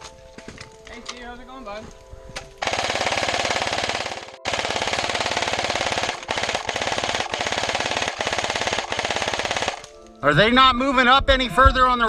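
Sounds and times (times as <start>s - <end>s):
airsoft gun firing full auto: 2.6s - 9.9s.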